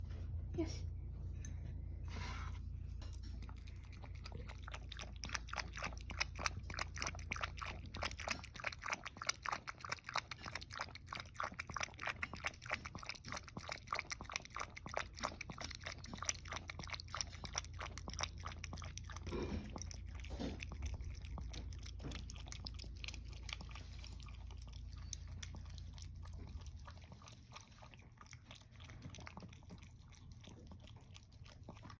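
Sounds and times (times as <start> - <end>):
dog lapping milk: 3.1 - 32.0.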